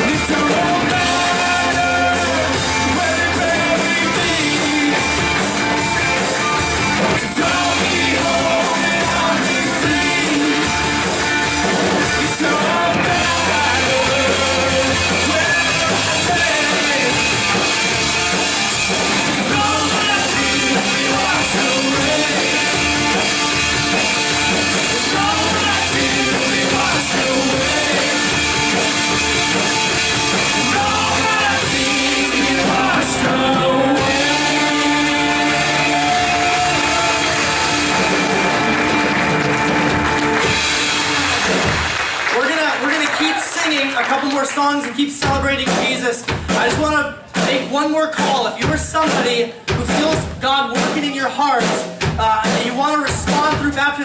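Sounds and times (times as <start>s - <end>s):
person singing: 0.0s - 5.5s, 7.2s - 10.9s, 12.0s - 17.7s, 19.3s - 23.2s, 24.8s - 29.0s, 30.4s - 38.2s
drums: 0.0s - 54.0s
live rock band playing: 0.0s - 54.0s.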